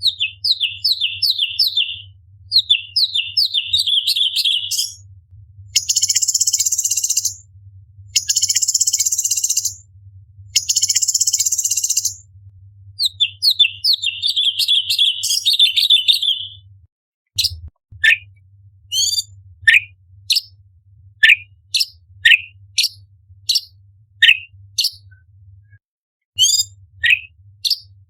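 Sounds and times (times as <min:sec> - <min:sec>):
bird singing: 0:00.0 - 0:05.0, 0:05.8 - 0:07.4, 0:08.2 - 0:09.8, 0:10.6 - 0:12.2, 0:13.0 - 0:16.6, 0:18.9 - 0:20.5, 0:21.2 - 0:25.2, 0:26.4 - 0:27.9
faint low hum: 0:00.0 - 0:14.7.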